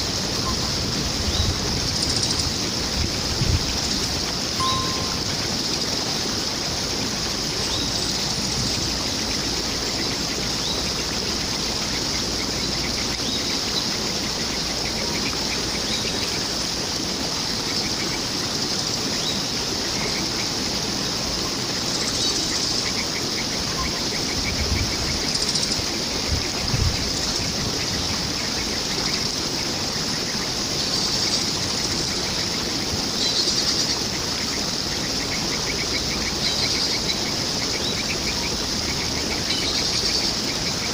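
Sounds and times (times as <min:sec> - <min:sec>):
flowing water rushing: 0:00.0 - 0:40.9
birds chirping faintly: 0:03.7 - 0:21.0.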